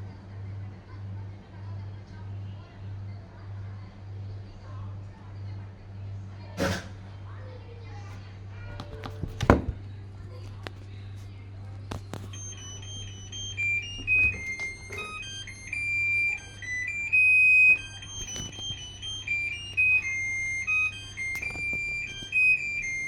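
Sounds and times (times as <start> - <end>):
electronic beeper playing tune: 12.1 - 23.0.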